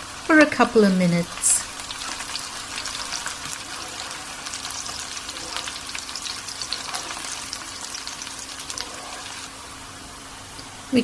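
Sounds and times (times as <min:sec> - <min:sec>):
food sizzling in hot oil: 0:00.0 - 0:11.0
small crackles: 0:01.7 - 0:09.5.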